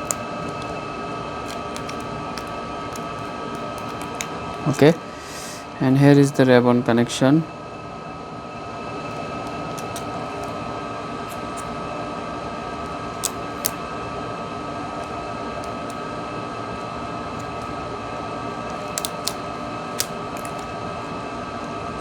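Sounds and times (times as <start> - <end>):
fan hum with faint whine: 0.0 - 22.0
connectors clicking onto circuit board: 1.5 - 4.3, 18.7 - 19.4.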